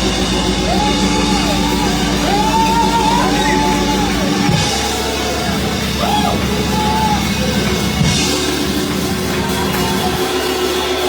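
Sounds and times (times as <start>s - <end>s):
drum kit: 0.0s - 11.0s
live church band music: 0.0s - 11.0s.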